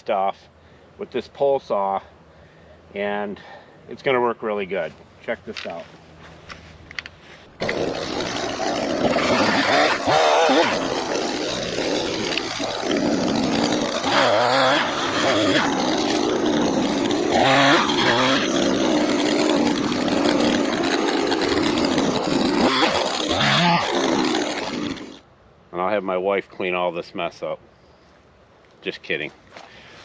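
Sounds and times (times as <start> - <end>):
two-stroke pole saw cutting: 7.6 - 25.2.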